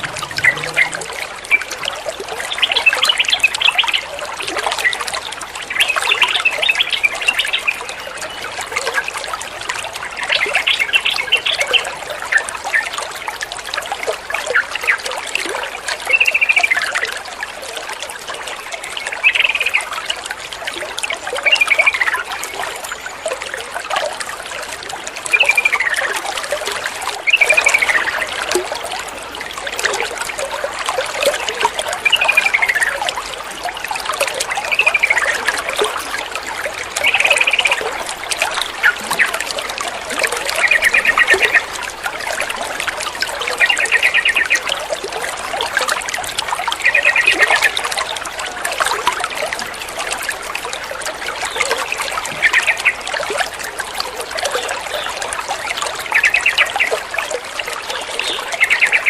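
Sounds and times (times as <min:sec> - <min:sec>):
bulbul calling: 0:00.0 - 0:01.8
trickling water: 0:00.0 - 0:59.0.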